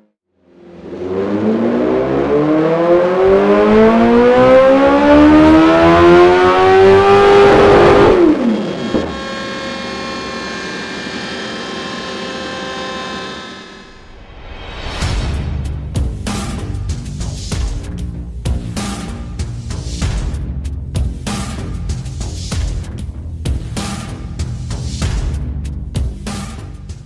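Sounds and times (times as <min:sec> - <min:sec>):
motorcycle engine revving: 0:00.6 - 0:14.0.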